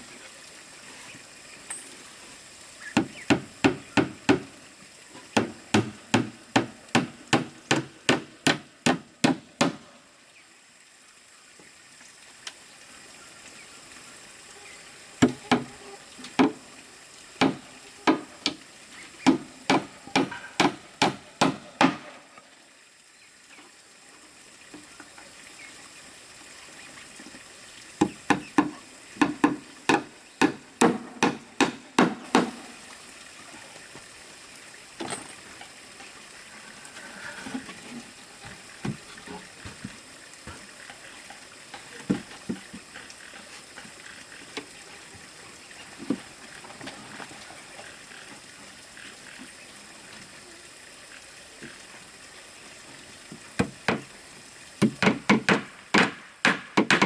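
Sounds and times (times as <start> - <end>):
hammer driving nails into wood: 5.4 - 9.8, 54.8 - 57.0.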